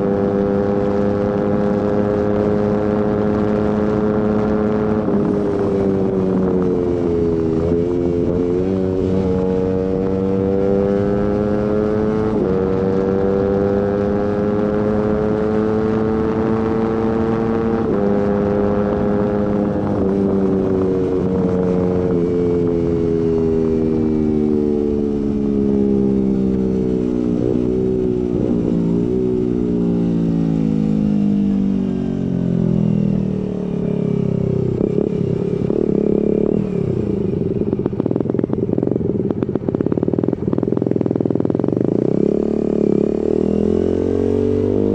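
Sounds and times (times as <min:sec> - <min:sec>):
motorcycle engine shifting gears: 0:00.0 - 0:44.9.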